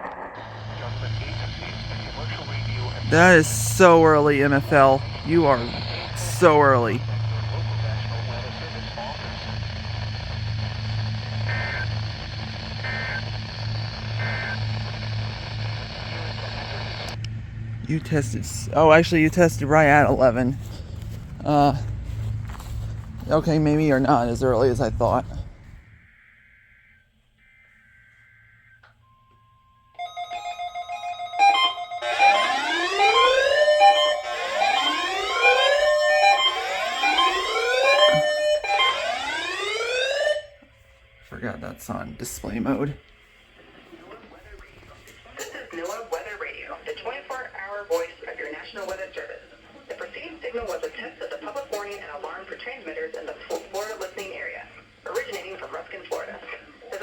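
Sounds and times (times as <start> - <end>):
whooping siren alarms: 0.0 - 26.1, 26.8 - 40.9
vehicle engine idling: 17.0 - 26.0.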